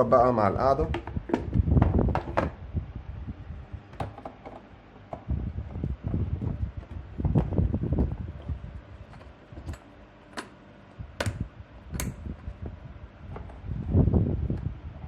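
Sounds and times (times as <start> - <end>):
plastic kettle knocks and clicks: 0.8 - 2.6, 4.0 - 5.3, 11.2 - 11.4.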